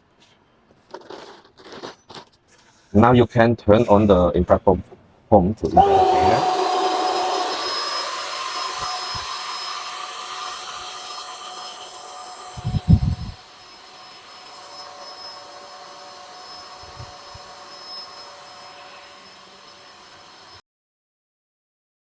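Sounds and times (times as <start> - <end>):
electric air pump whining: 5.7 - 20.6.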